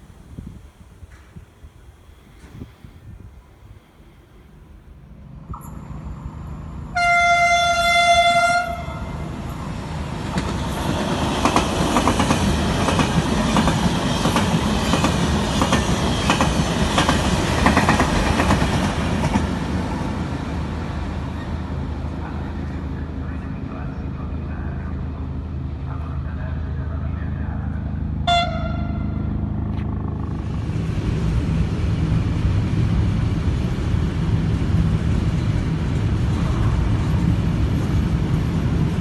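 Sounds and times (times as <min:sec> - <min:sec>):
train horn: 0:06.9 - 0:09.3, 0:28.2 - 0:29.4
train wheels clickety-clack: 0:10.2 - 0:20.2.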